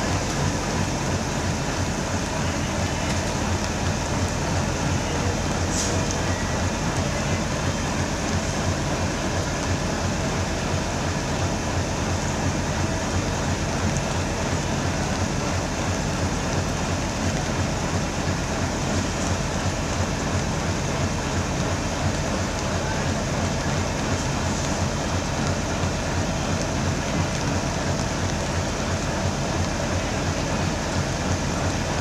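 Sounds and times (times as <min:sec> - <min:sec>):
train rumbling on track: 0:00.0 - 0:32.0
hiss: 0:05.6 - 0:06.4.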